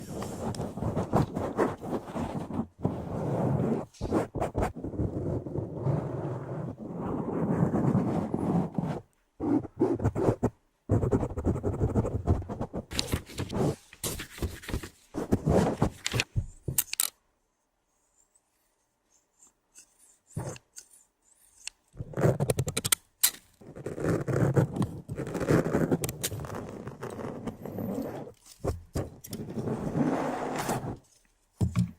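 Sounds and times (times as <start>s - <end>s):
rough scraping and rubbing: 11.9s - 16.1s, 23.6s - 31.1s
sharp clicks and clatters: 21.7s - 23.6s.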